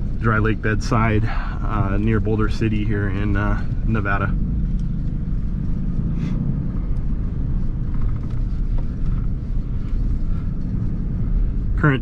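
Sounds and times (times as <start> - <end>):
vehicle engine and tyre rumble: 0.0 - 12.0
rattles and knocks: 7.7 - 9.3.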